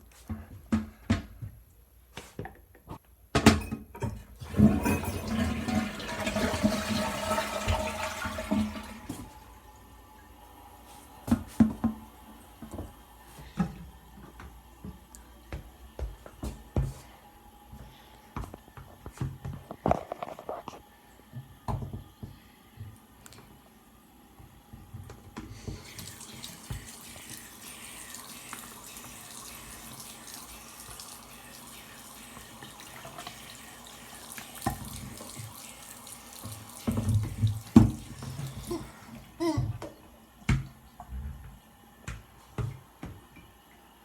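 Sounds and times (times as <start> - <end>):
toilet flushing water rush: 4.4 - 14.8, 23.9 - 42.0.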